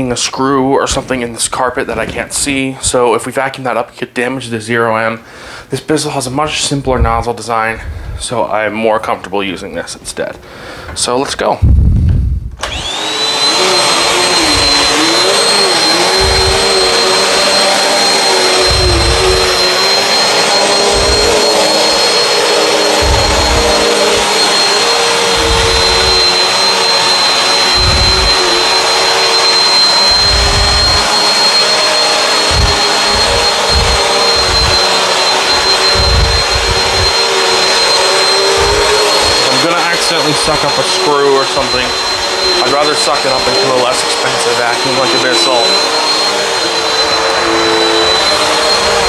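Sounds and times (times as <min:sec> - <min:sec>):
low rumbles: 0:11.6 - 0:12.6, 0:18.6 - 0:19.5, 0:22.9 - 0:24.3, 0:27.8 - 0:28.4, 0:30.1 - 0:31.0, 0:32.4 - 0:34.9, 0:35.9 - 0:37.2, 0:38.6 - 0:39.4
vacuum cleaner on carpet: 0:12.6 - 0:49.0.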